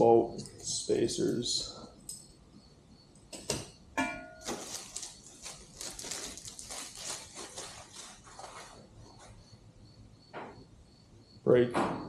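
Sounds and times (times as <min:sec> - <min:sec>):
rustling: 0:04.4 - 0:09.4.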